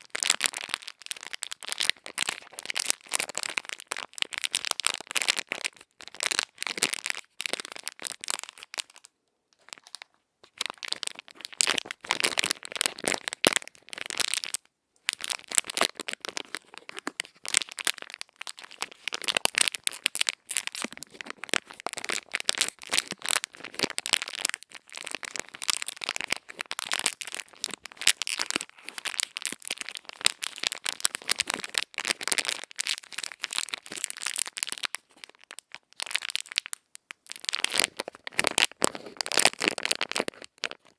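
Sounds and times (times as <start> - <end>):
crisp crackling and scratching: 15.2 - 36.7, 37.4 - 40.9.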